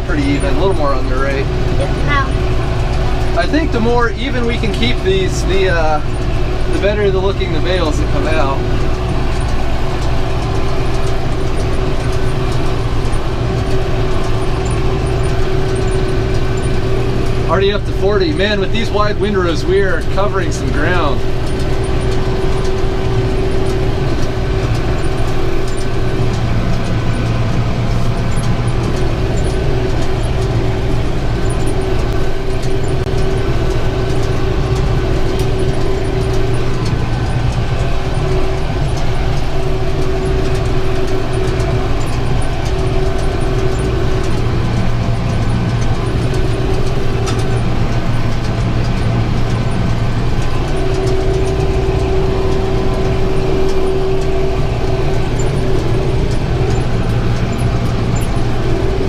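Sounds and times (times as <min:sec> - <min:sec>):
baler high tone: 0:00.0 - 0:06.1
tractor engine under load: 0:00.0 - 0:59.0.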